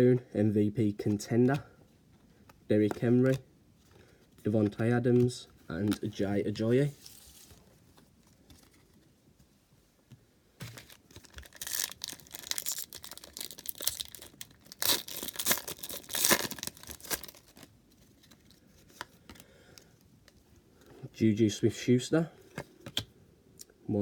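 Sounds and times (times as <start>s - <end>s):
wrapper tearing and crinkling: 10.8s - 18.5s.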